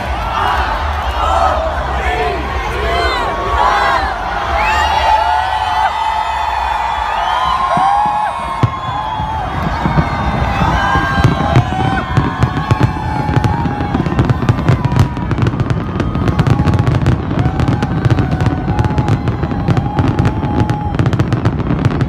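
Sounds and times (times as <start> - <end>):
fireworks bangs and crackles: 5.6 - 22.0.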